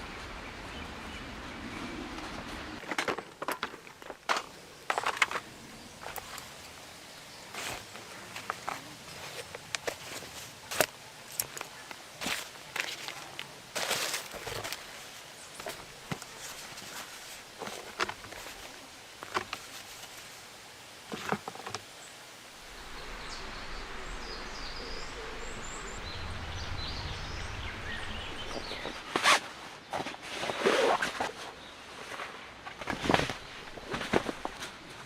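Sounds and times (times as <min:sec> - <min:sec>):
birds calling: 0:22.0 - 0:30.8
low steady rumble: 0:22.6 - 0:28.9.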